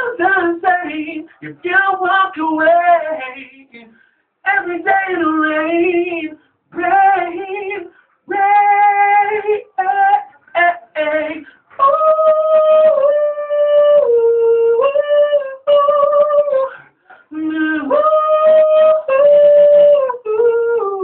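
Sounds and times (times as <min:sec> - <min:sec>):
man singing a cappella: 0:00.0 - 0:21.0
short breaths: 0:03.9 - 0:04.4, 0:07.9 - 0:08.2, 0:16.7 - 0:17.3.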